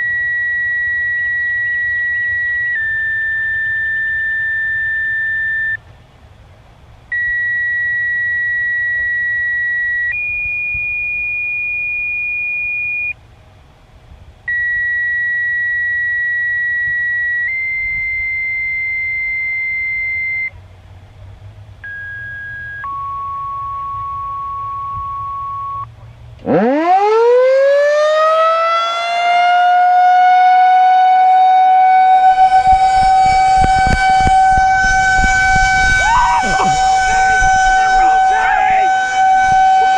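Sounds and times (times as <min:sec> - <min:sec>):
outdoor warning siren wailing: 0:00.0 - 0:05.8, 0:07.1 - 0:13.2, 0:14.5 - 0:20.5, 0:26.4 - 0:39.9
steady electronic tones: 0:32.1 - 0:39.9.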